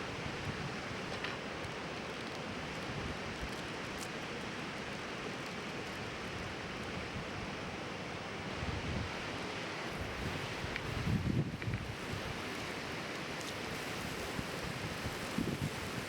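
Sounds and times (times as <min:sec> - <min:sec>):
fire crackles: 0:00.1 - 0:07.6, 0:09.7 - 0:16.0
bonfire hissing: 0:11.8 - 0:16.0.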